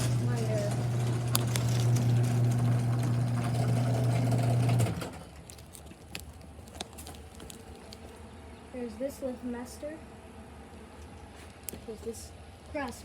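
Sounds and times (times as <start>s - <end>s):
garage door opener motor hum: 0.0s - 5.4s.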